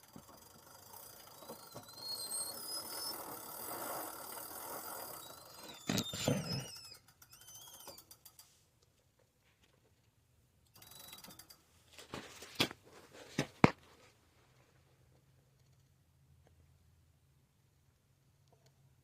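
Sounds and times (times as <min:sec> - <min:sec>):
bike drivetrain ratcheting clicks: 0:00.0 - 0:08.5, 0:10.7 - 0:11.7.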